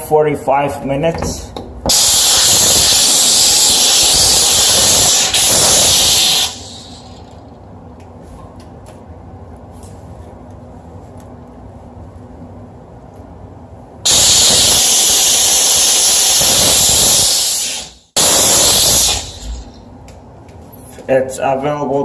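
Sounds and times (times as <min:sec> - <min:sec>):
steam cleaner hissing: 0:01.9 - 0:07.2, 0:14.1 - 0:19.8.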